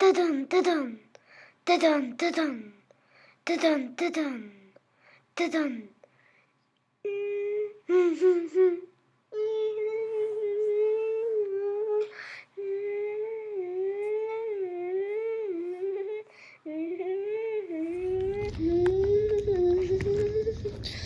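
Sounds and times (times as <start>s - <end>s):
child humming long notes: 7.1s - 21.0s.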